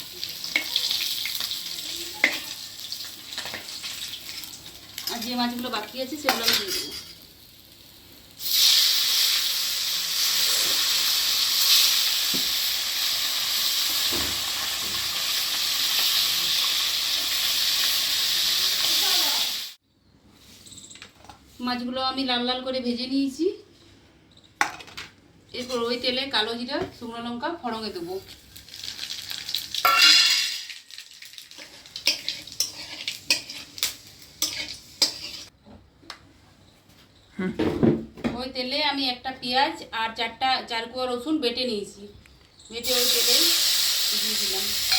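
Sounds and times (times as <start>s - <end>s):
fish sizzling in hot oil: 0.0s - 19.8s, 28.3s - 35.5s, 42.8s - 44.9s
spatula scraping metal pan: 31.6s - 35.5s.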